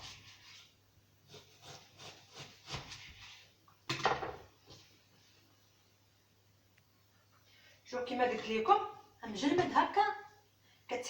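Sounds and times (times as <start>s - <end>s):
knife slicing frozen chicken: 1.3s - 3.2s.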